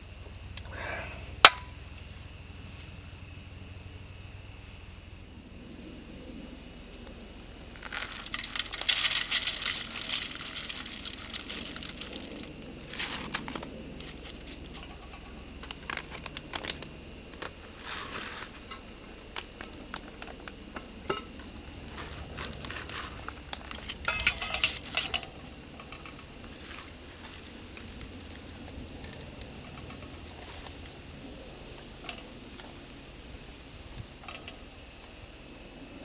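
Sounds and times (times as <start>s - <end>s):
packaging rustling: 7.8s - 14.9s
cooking gear clinking: 7.8s - 16.8s, 22.2s - 27.0s.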